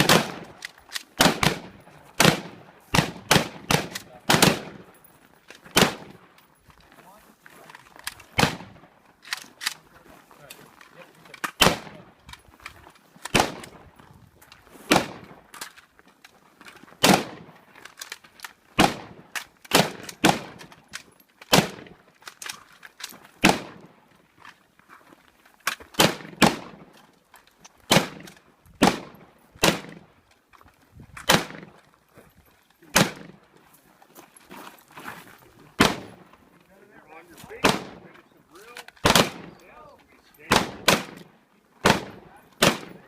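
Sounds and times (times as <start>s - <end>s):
gunshots with echo: 0.0s - 0.6s, 1.2s - 4.9s, 32.9s - 33.4s, 37.6s - 38.1s, 39.0s - 39.6s, 40.5s - 43.0s.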